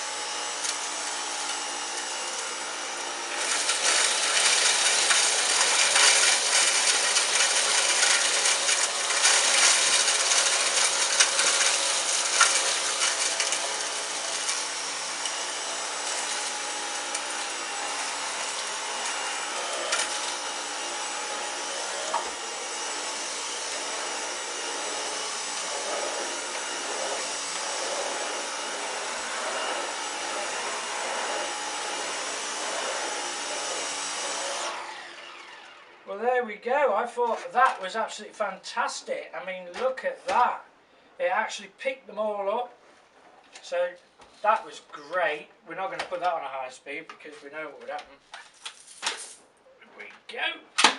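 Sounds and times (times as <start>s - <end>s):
cordless vacuum running: 0.0s - 36.1s
cornflakes rattling up vacuum wand: 3.4s - 27.8s, 48.4s - 49.4s.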